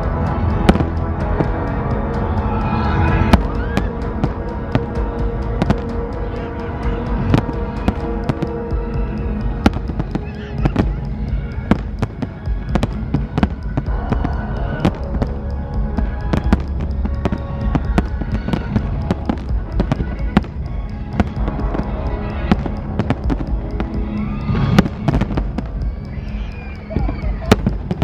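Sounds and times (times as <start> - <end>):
fireworks bangs and crackles: 0.0 - 28.0
loud music over sound system: 0.0 - 28.0.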